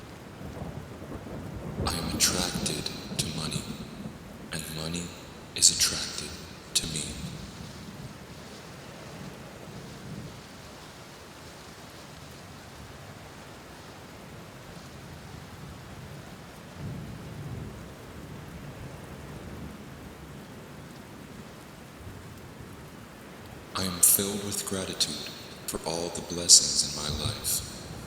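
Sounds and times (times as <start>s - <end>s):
steady rain falling: 0.0s - 28.0s
thunder rumbling: 0.5s - 10.7s, 23.7s - 28.0s.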